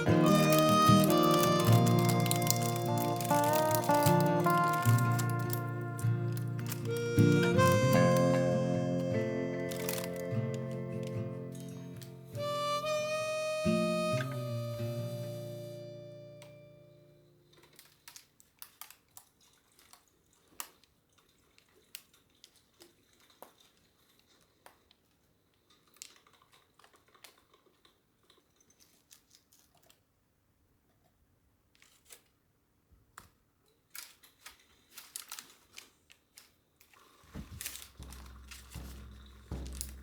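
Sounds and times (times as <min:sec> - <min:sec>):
music: 0:00.0 - 0:17.3, 0:37.4 - 0:40.0
quiet hiss: 0:00.0 - 0:17.5, 0:37.1 - 0:40.0.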